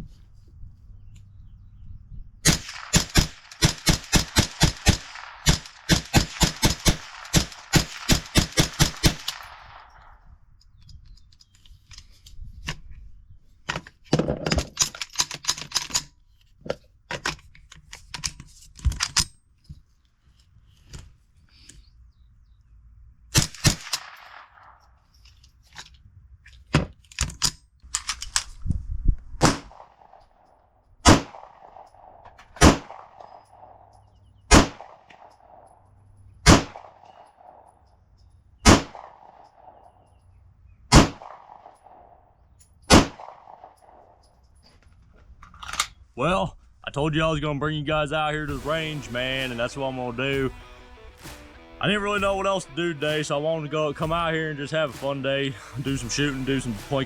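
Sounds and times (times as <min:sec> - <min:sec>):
rapid gunfire: 0:02.4 - 0:10.2, 0:23.4 - 0:24.7, 0:32.6 - 0:33.8, 0:34.5 - 0:35.4, 0:36.5 - 0:37.7, 0:48.5 - 0:57.0
single gunshots: 0:02.4 - 0:10.2, 0:23.4 - 0:24.8, 0:29.4 - 0:30.2, 0:31.0 - 0:33.9, 0:34.5 - 0:35.8, 0:36.4 - 0:37.7, 0:38.6 - 0:39.9, 0:40.9 - 0:42.2, 0:42.9 - 0:44.2.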